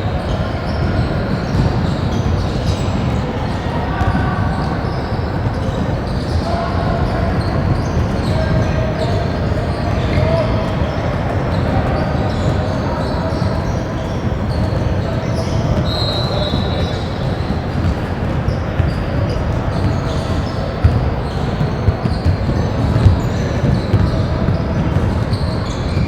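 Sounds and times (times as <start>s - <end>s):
voices in a large hall: 0.0s - 26.0s
basketball bouncing on gym floor: 0.7s - 3.2s, 11.6s - 26.0s.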